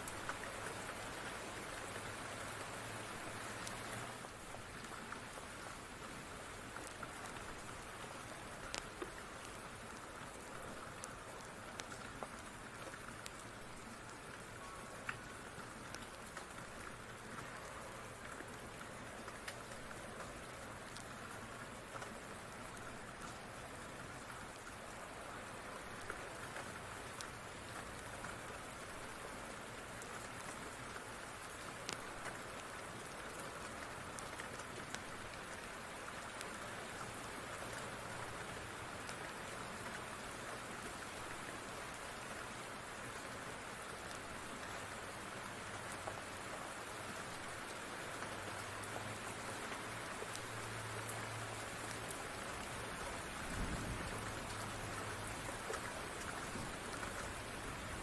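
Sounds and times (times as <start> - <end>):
rain falling: 0.0 - 58.0
faint sharp clicks: 8.7 - 9.6, 31.8 - 32.4.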